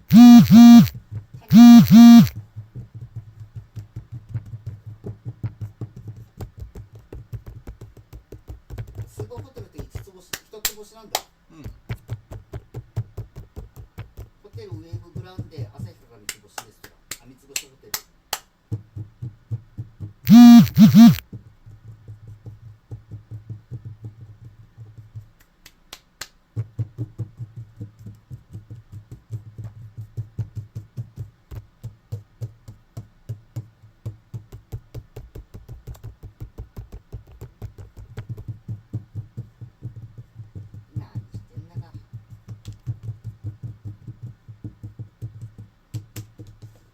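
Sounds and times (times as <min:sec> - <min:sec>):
loud distorted pitched sounds: 0:00.1 - 0:00.9, 0:01.5 - 0:02.3, 0:20.3 - 0:21.2
low steady hum: 0:00.1 - 0:00.9, 0:01.5 - 0:02.3.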